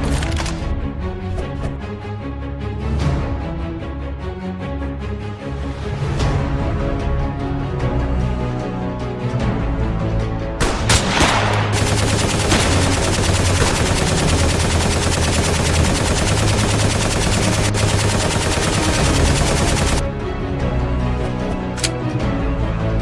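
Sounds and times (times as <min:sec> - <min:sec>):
background music: 0:00.0 - 0:23.0
rapid automatic gunfire: 0:11.6 - 0:20.0.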